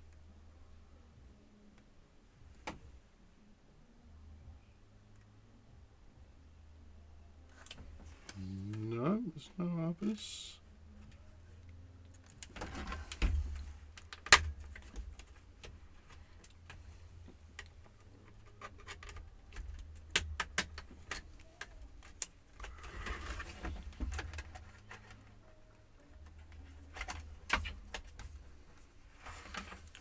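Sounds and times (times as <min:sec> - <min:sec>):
plastic laptop case clicking and rattling: 0:12.2 - 0:25.4.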